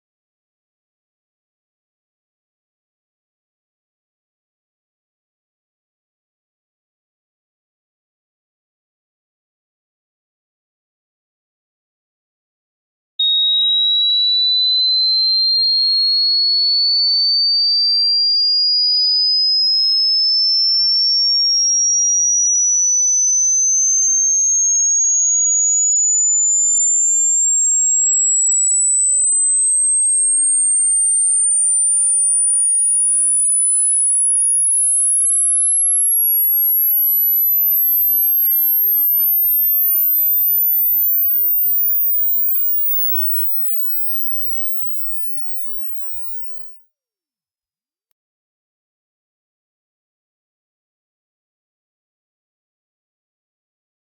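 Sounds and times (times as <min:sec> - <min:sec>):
rising sine tone sweep: 0:22.8 - 0:46.8.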